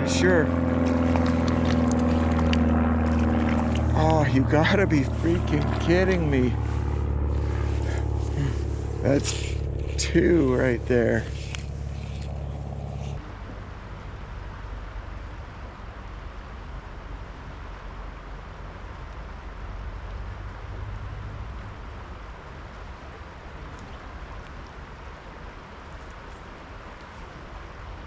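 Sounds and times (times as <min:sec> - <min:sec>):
river water rushing: 0:00.0 - 0:28.0.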